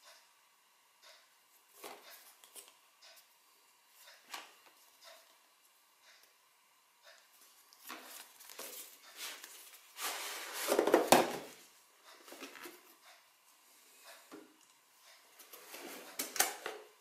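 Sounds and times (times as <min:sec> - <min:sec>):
cardboard and plastic rustling: 0:07.9 - 0:11.6.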